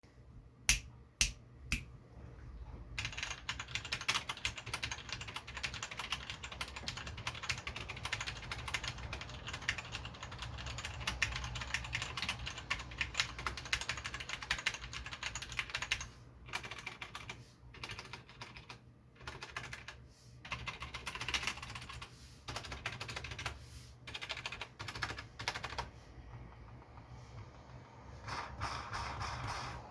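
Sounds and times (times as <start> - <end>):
mechanical keyboard typing: 3.0 - 27.8.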